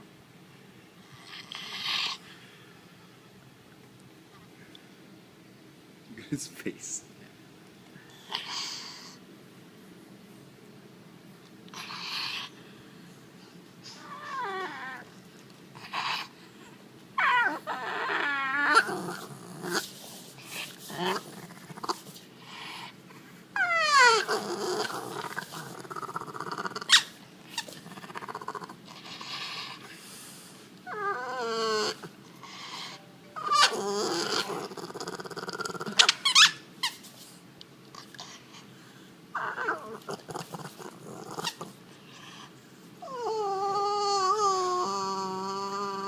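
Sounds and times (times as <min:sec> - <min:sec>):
dog whining: 0:11.7 - 0:12.6, 0:13.8 - 0:15.2, 0:15.8 - 0:19.9, 0:23.6 - 0:29.9, 0:30.8 - 0:37.0, 0:39.3 - 0:42.4, 0:43.0 - 0:46.0.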